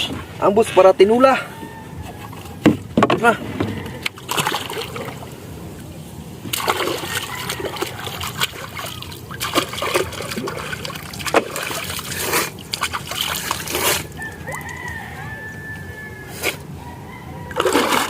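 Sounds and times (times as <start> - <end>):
water splashing and trickling: 2.2 - 15.2, 17.4 - 18.0.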